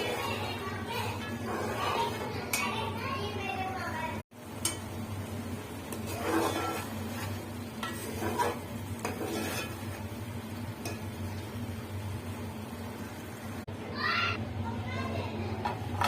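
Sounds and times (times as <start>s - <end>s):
metal spoon scraping a pot: 0.0s - 2.8s, 5.9s - 10.1s.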